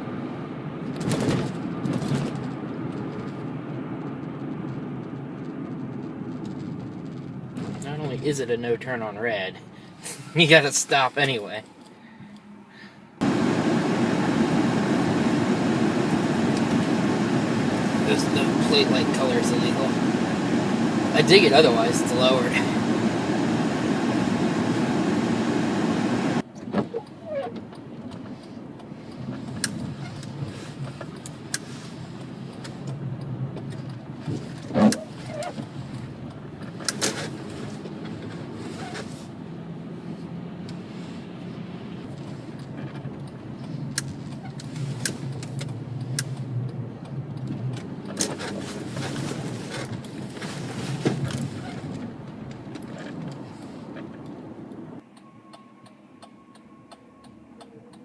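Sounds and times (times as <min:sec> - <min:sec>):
road and engine hum: 0:00.0 - 0:58.0
loud steady rush: 0:13.2 - 0:26.4.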